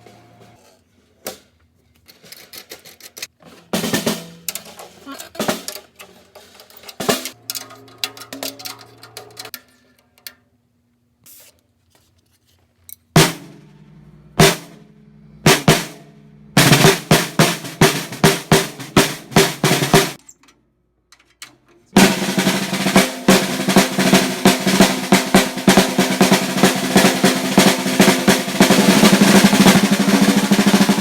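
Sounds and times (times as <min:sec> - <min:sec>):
snare drum roll: 0:13.2 - 0:20.2, 0:22.0 - 0:31.0
snare drum strokes: 0:13.2 - 0:20.2, 0:22.0 - 0:31.0.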